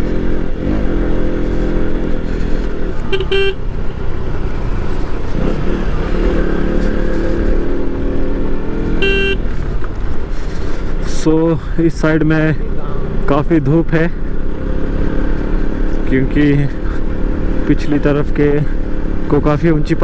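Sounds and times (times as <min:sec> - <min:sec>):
motorcycle engine running: 0:00.0 - 0:11.1
horn beeps: 0:03.1 - 0:03.8, 0:09.0 - 0:09.5.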